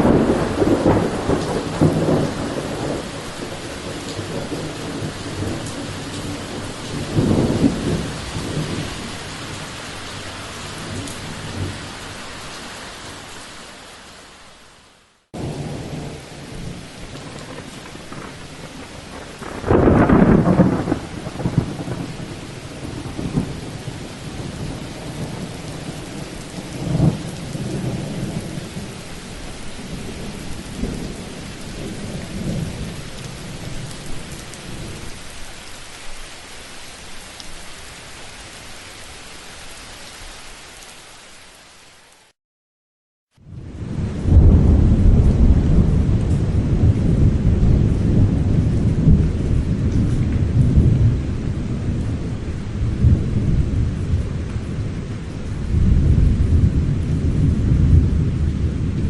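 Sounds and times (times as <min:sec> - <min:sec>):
thunder: 0:00.0 - 0:09.0, 0:15.4 - 0:29.0, 0:43.4 - 0:59.0
steady rain: 0:00.0 - 0:42.4, 0:43.3 - 0:59.0.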